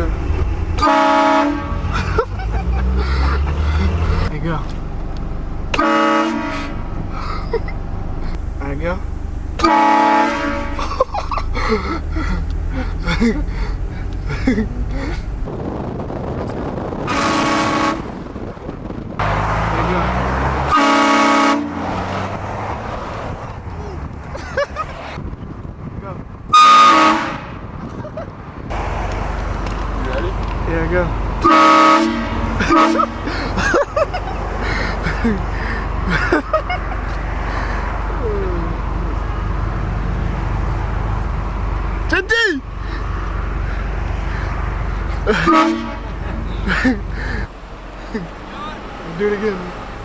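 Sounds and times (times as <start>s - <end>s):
car engine rumble: 0.0s - 50.0s
air horn blasting a chord: 0.8s - 1.8s, 5.8s - 6.8s, 9.6s - 10.8s, 17.1s - 18.0s, 20.7s - 21.8s, 26.5s - 27.5s, 31.4s - 33.2s, 45.4s - 46.1s
people yelping and laughing: 1.9s - 4.3s, 10.8s - 15.3s, 33.0s - 37.2s.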